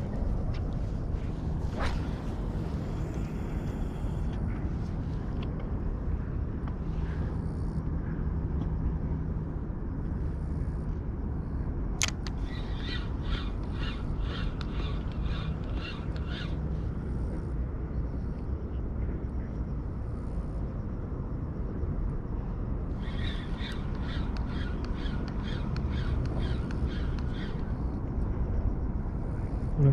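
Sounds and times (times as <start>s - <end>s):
steady low rumble: 0.0s - 29.9s
sharp click: 12.0s - 12.4s
crows cawing: 23.0s - 27.6s.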